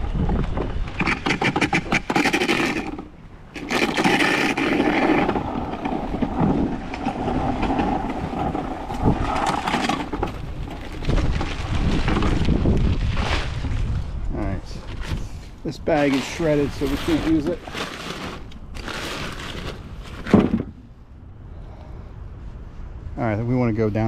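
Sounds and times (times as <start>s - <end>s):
trash scraping and rustling: 0.1s - 14.2s, 14.8s - 20.9s
plastic bag dragged: 3.6s - 14.0s, 16.0s - 20.4s.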